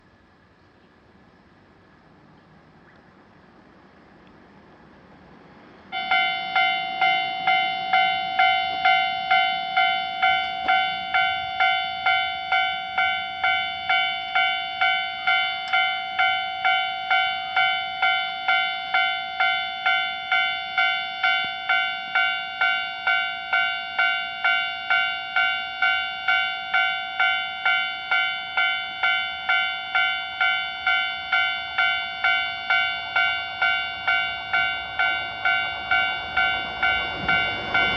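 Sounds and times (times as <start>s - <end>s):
railroad crossing bell clanging: 5.8s - 37.9s.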